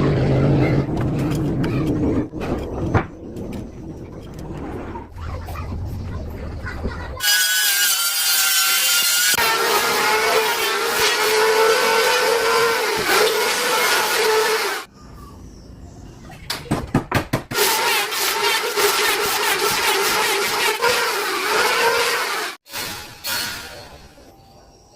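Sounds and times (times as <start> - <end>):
electric planer cutting wood: 7.2 - 14.9, 17.6 - 22.6.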